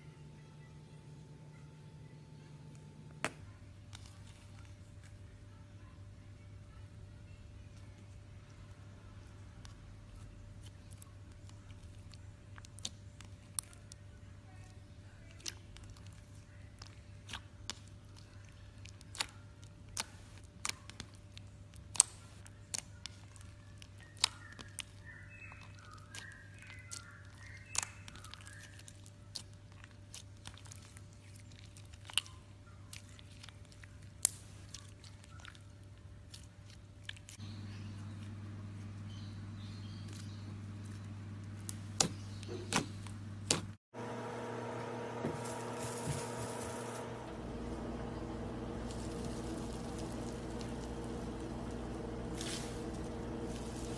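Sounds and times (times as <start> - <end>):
low steady hum: 0.0 - 53.9
buzzing hum: 37.4 - 53.9.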